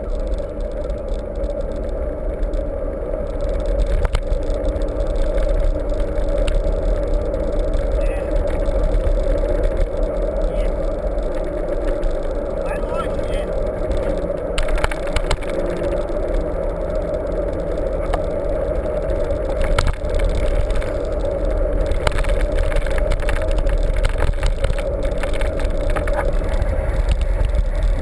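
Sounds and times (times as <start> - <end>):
bike rattles and clicks: 0.0 - 28.0
bike tyres rolling: 0.0 - 28.0.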